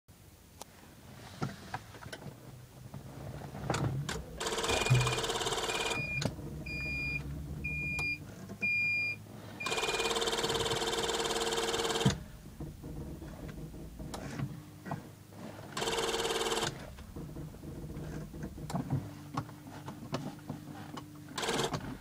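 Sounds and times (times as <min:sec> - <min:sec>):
starter motor cranking: 0:03.7 - 0:08.9, 0:09.6 - 0:14.4, 0:15.7 - 0:18.9, 0:21.3 - 0:22.0.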